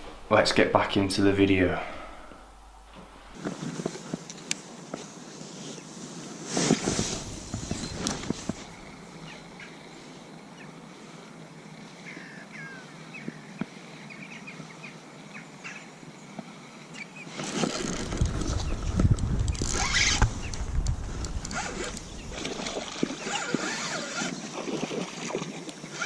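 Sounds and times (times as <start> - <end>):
rustling on microphone: 2.8 - 9.4, 17.3 - 25.4.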